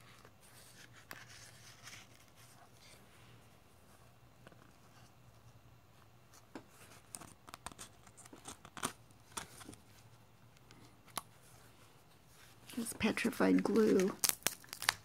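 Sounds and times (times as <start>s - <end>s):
paper pages crinkling: 0.0s - 3.0s, 6.3s - 15.0s.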